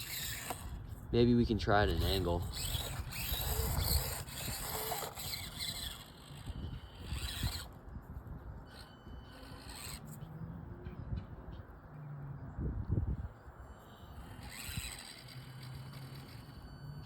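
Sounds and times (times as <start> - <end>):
toy car motor whining: 0.0 - 10.8, 13.2 - 17.0
tyres scrabbling on slope: 1.9 - 7.6.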